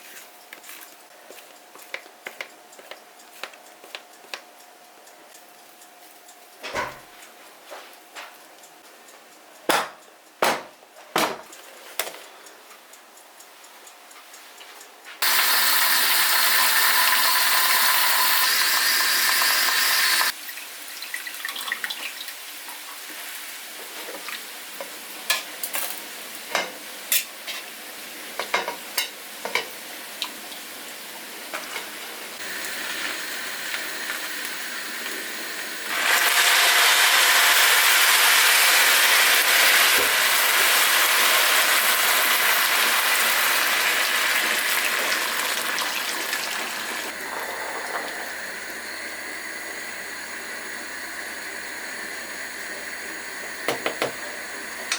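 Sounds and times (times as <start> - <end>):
loud steady hiss: 15.2 - 20.5, 32.3 - 46.2, 46.8 - 54.9.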